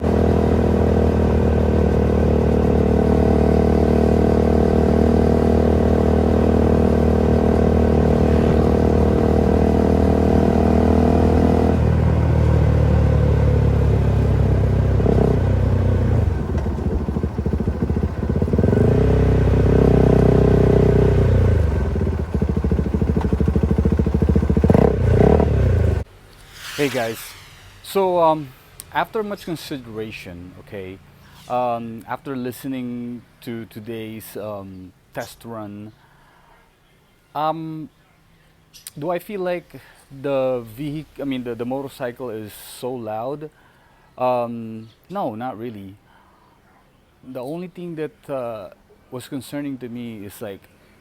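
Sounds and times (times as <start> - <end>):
motorcycle engine revving: 0.0 - 26.1.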